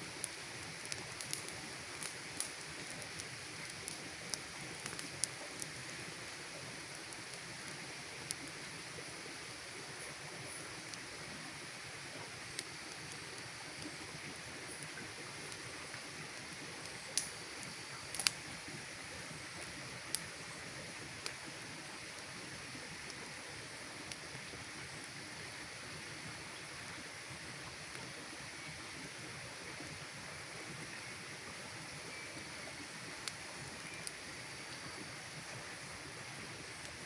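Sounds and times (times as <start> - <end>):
campfire hissing: 0.0 - 37.0
wood crackling pops: 0.2 - 5.8, 16.4 - 18.6.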